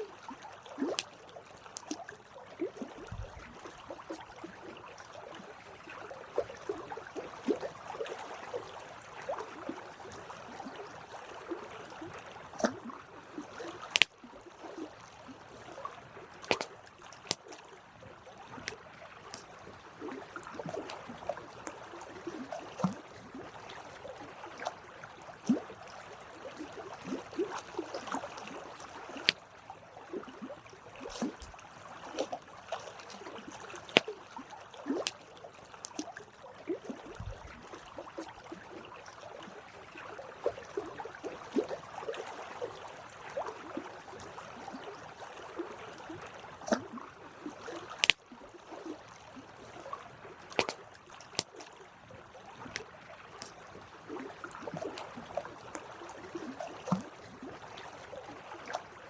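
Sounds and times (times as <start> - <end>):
campfire crackling and popping: 13.9 - 14.1, 48.0 - 48.2.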